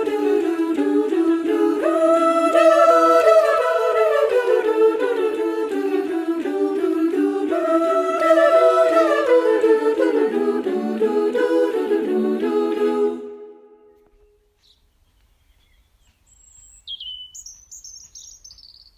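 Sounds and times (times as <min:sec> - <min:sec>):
women's choir singing a cappella: 0:00.0 - 0:13.8.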